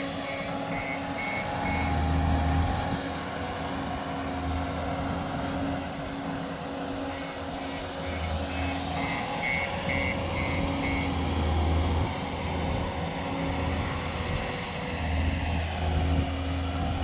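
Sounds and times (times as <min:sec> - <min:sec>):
vehicle engine running: 0:00.0 - 0:17.0
reversing alarm beeping: 0:00.1 - 0:02.3, 0:08.0 - 0:12.0.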